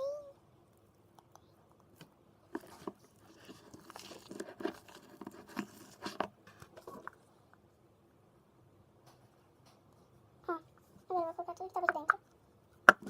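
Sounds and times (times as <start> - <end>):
slime crunchy crinkly scraping: 2.6 - 7.1.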